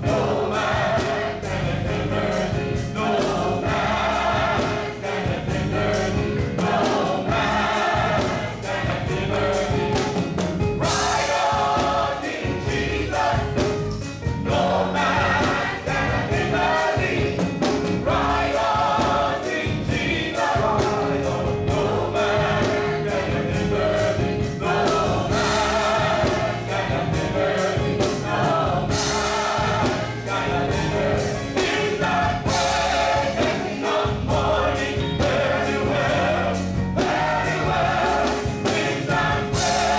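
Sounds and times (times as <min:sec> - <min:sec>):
bass and drums: 0:00.0 - 0:39.9
choir singing: 0:00.0 - 0:39.9.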